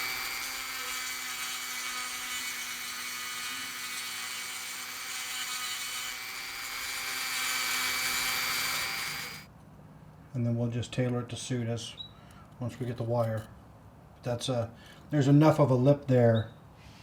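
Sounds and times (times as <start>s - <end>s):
rotary tool grinding firebrick: 0.0s - 9.5s.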